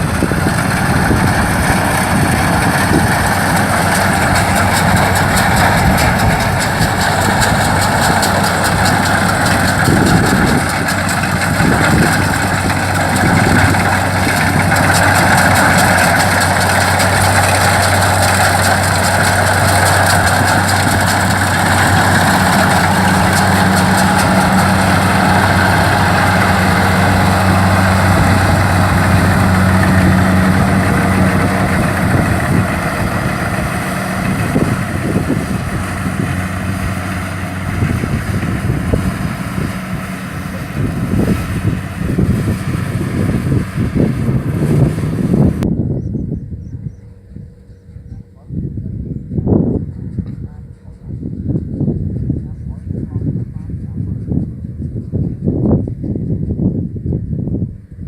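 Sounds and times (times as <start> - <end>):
diesel engine running: 0.0 - 45.7, 46.8 - 58.0
higher hum: 0.0 - 45.7
low hum: 0.0 - 58.0.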